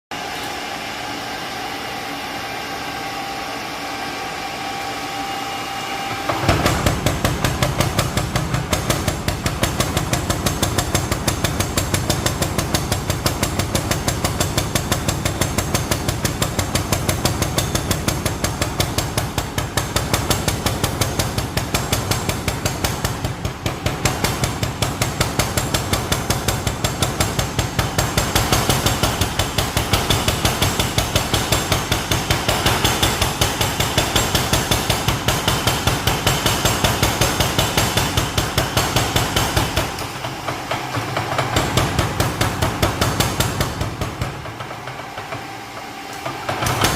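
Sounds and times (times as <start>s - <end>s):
machine hum: 0.1s - 46.9s
hammer blows forging metal: 6.1s - 46.9s.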